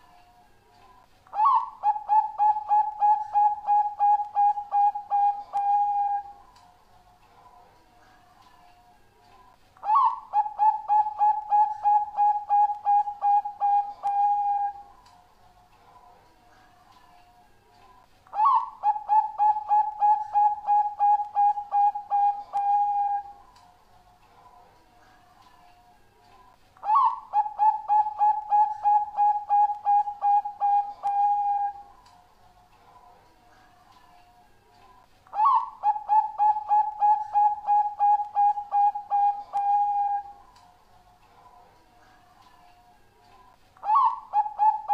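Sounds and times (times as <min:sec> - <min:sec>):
dove cooing: 0:01.3 - 0:06.4, 0:09.8 - 0:14.9, 0:18.3 - 0:23.5, 0:26.8 - 0:31.9, 0:35.3 - 0:40.5, 0:43.8 - 0:44.9.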